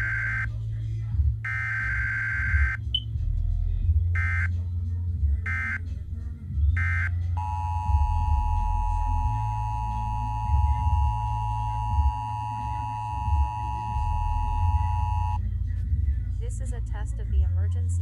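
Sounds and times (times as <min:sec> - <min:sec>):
two-tone alert tone: 0:00.0 - 0:00.5, 0:04.2 - 0:04.5, 0:06.8 - 0:15.4.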